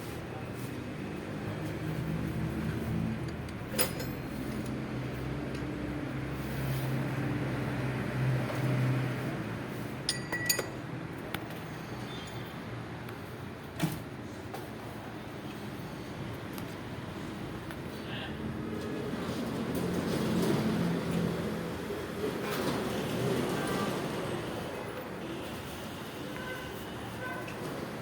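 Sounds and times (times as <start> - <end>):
sharp metallic clinks: 10.1 - 10.9.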